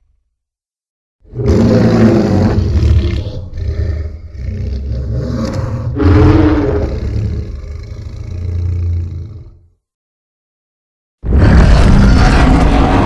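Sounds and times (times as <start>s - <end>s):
deep rumbling monster roar: 1.3s - 9.7s, 11.2s - 13.0s.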